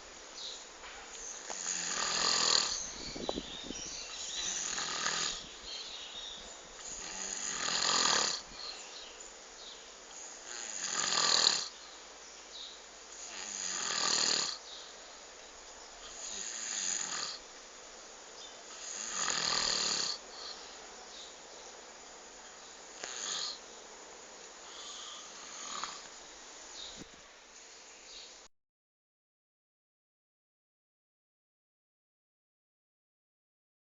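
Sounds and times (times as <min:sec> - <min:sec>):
person snoring: 0:01.4 - 0:02.8, 0:04.4 - 0:05.4, 0:06.8 - 0:08.8, 0:10.4 - 0:11.7, 0:13.2 - 0:14.6, 0:16.0 - 0:17.4, 0:18.7 - 0:20.6, 0:23.0 - 0:23.6, 0:24.6 - 0:26.1.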